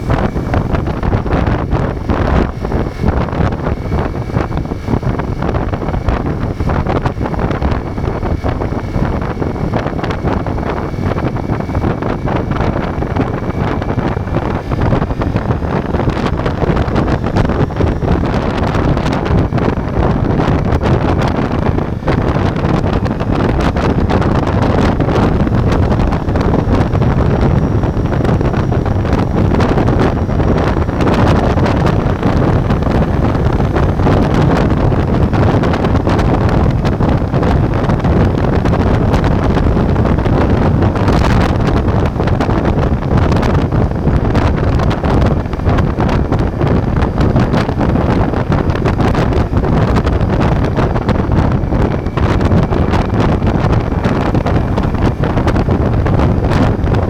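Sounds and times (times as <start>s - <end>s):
motorcycle engine running: 0.0s - 57.0s
wind rushing over microphone: 0.0s - 57.0s.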